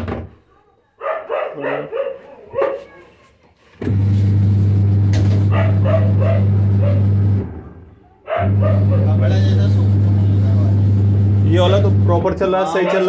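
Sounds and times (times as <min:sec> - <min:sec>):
dog barking: 0:01.0 - 0:03.1, 0:05.4 - 0:07.2, 0:08.1 - 0:09.2
washing machine motor humming: 0:03.8 - 0:12.6.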